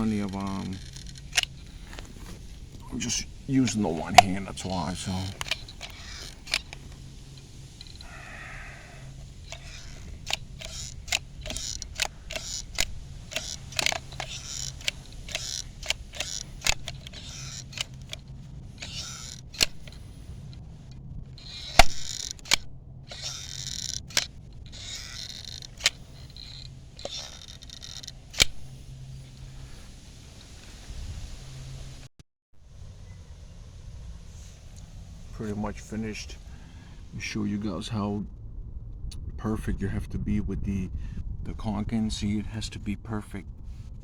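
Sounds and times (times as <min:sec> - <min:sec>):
caulking gun clicks: 0:00.0 - 0:30.6
caulk hissing: 0:00.0 - 0:32.1.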